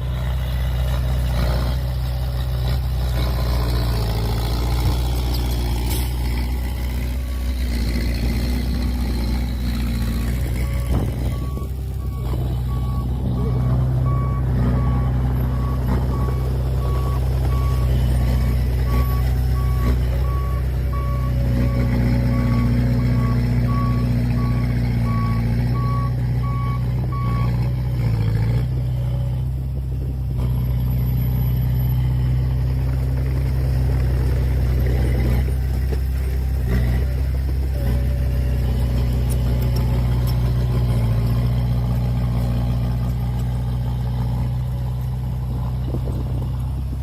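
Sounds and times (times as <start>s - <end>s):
diesel engine droning: 0.0s - 47.0s
reverse alarm beeping: 10.6s - 27.5s.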